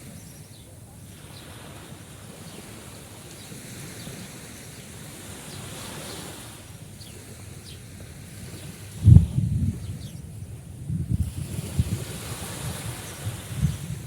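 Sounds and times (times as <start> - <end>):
sea surf washing: 0.0 - 14.0
wind buffeting microphone: 7.0 - 14.0.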